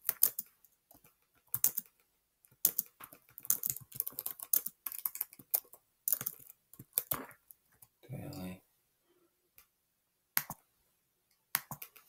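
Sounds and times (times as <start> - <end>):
typing on computer keyboard: 0.0 - 7.9, 11.6 - 12.0.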